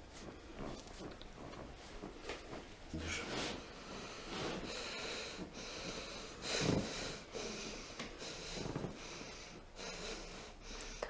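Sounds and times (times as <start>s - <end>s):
person breathing heavily: 3.7s - 11.0s.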